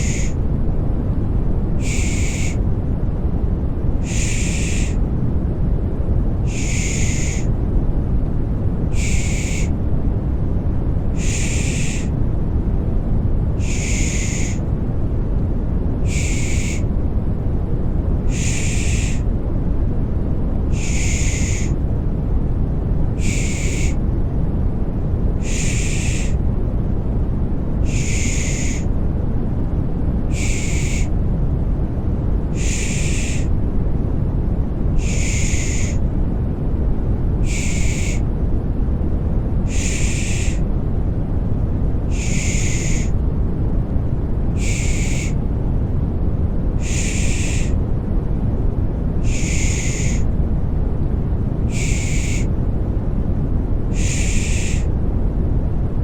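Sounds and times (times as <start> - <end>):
white noise rushing: 0.0 - 56.0.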